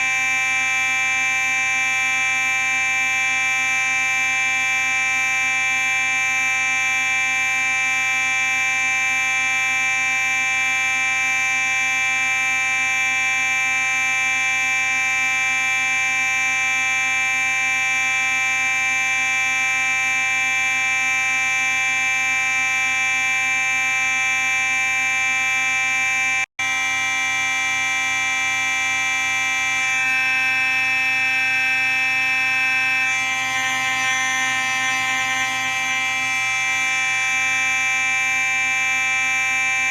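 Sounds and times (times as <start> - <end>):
fire alarm horn buzzy tone: 0.0 - 39.9.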